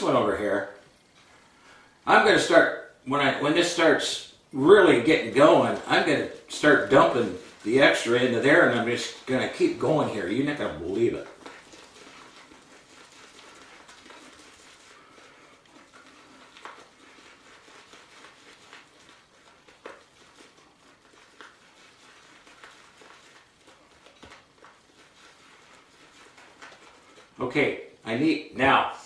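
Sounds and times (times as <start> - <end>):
shaving brush swishing lather: 0.0 - 29.0.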